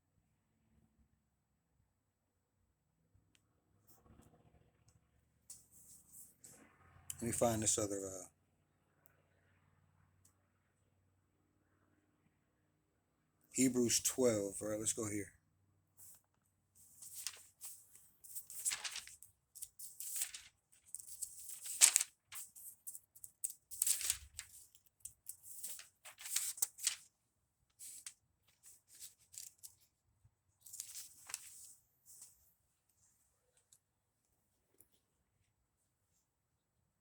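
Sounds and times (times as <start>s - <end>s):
thin pages rustling and flipping: 16.8s - 27.1s, 27.8s - 29.9s, 30.6s - 32.4s.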